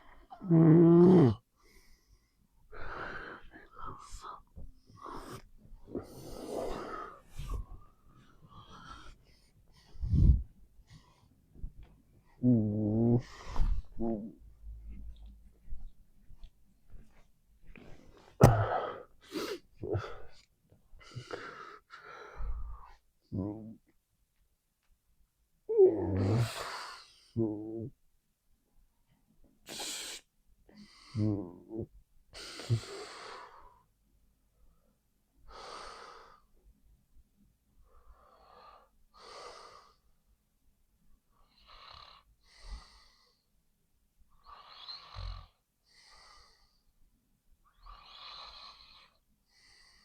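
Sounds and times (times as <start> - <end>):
person snoring: 0.2 - 1.4, 12.4 - 14.4, 25.7 - 27.9.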